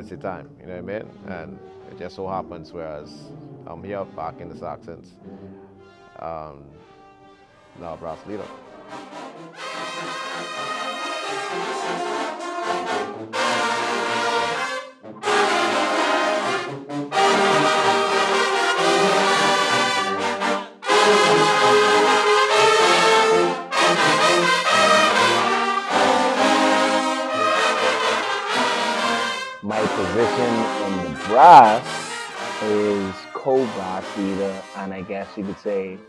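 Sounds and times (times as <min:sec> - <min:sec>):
brass section playing: 0:08.3 - 0:36.0.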